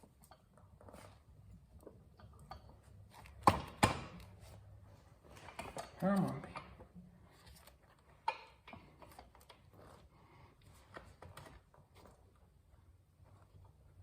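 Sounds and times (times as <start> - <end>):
metal tools clicking and tapping: 1.8 - 3.5.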